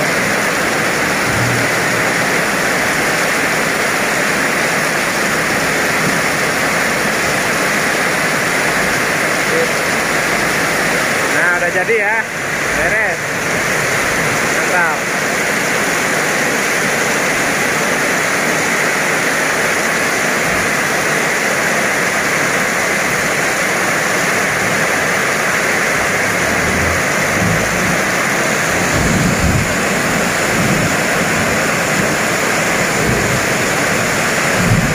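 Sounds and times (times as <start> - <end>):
low rumbles: 0.0 - 4.5, 24.3 - 34.9
steady rain hiss: 0.0 - 34.9.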